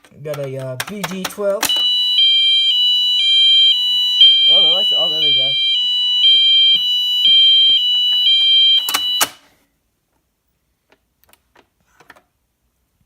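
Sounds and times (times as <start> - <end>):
sharp clicks: 0.0 - 1.9, 8.8 - 9.4
fire alarm horn two-tone: 1.7 - 9.4.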